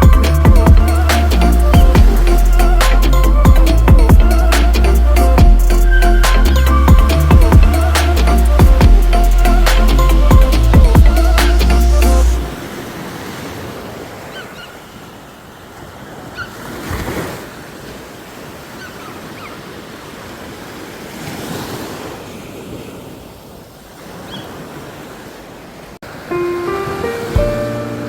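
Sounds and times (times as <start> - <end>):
wind on microphone: 0.0 - 14.0
sea waves washing onto beach: 0.0 - 28.0.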